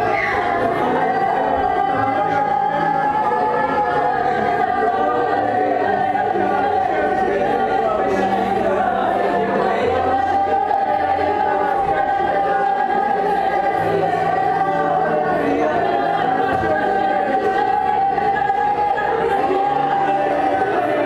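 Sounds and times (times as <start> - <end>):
choir singing held notes: 0.0 - 21.0.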